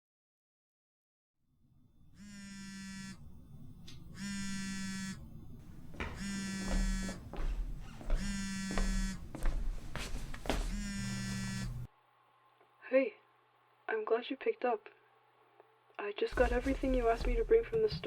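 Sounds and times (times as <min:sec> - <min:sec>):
mobile phone vibrating: 0:02.2 - 0:03.2, 0:04.1 - 0:05.3, 0:06.0 - 0:09.4, 0:10.6 - 0:11.9.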